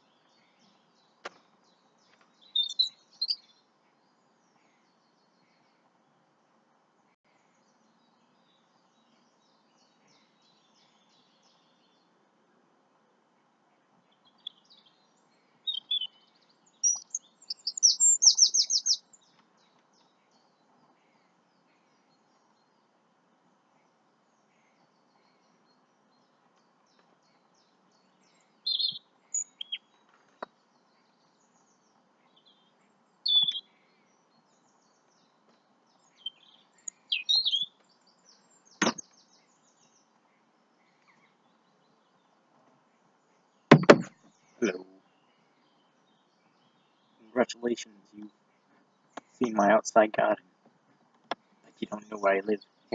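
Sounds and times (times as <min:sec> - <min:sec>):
birds chirping: 0:00.0 - 0:52.9
faint background hiss: 0:00.0 - 0:52.9
sharp knock: 0:38.8 - 0:39.0, 0:43.7 - 0:44.2.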